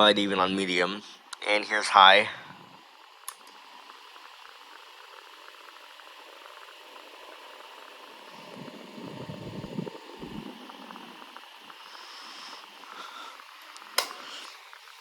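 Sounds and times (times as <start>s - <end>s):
table fan rushing air: 2.4s - 15.0s
low rumbles: 8.4s - 11.4s
sharp click: 13.9s - 14.2s.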